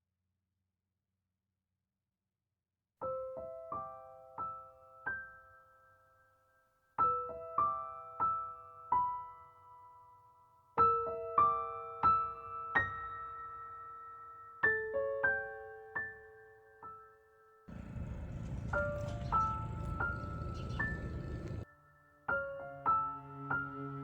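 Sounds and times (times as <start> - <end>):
gentle piano notes: 17.7 - 21.6.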